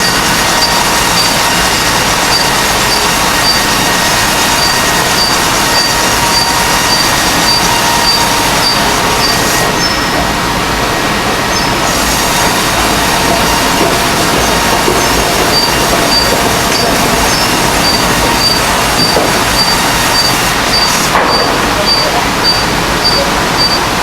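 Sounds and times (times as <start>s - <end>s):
bandsaw mill sawing log: 0.0s - 24.0s
short high beeps: 4.5s - 10.2s, 15.5s - 23.9s.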